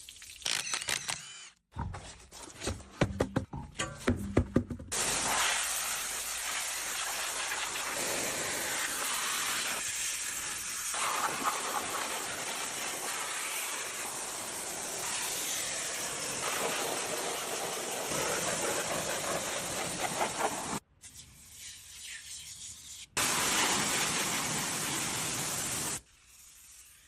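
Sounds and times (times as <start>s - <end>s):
hiss of spray: 4.9s - 20.8s, 23.2s - 27.0s.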